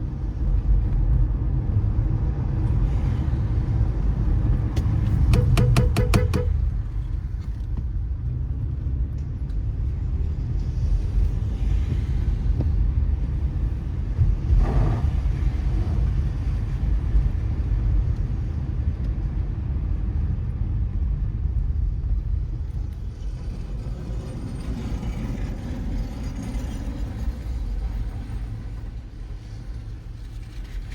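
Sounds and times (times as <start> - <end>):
car driving on wet road: 6.6 - 22.3.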